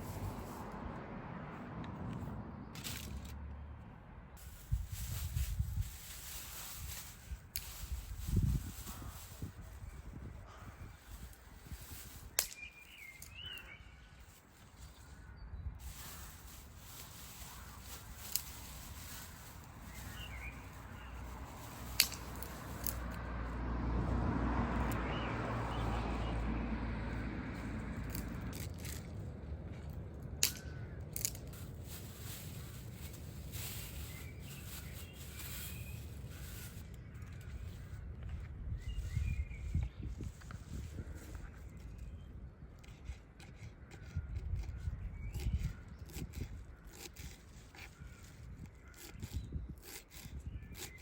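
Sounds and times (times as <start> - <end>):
bird chirps: 12.2 - 16.2.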